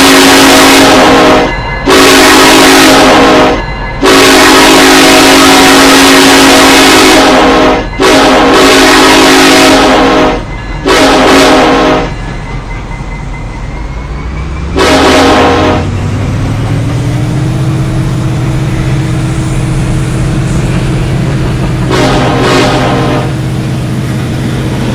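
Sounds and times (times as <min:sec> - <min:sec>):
locomotive air horn blasts: 0:00.0 - 0:12.2, 0:14.8 - 0:16.0, 0:21.8 - 0:23.5
train rumbling past: 0:00.0 - 0:24.9.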